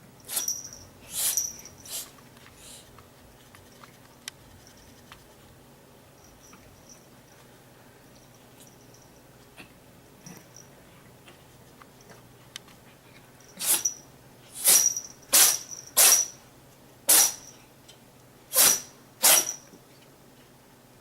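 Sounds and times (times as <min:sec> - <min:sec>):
cat sneezing: 0:00.3 - 0:02.8, 0:13.6 - 0:16.4, 0:17.1 - 0:17.6, 0:18.5 - 0:19.7.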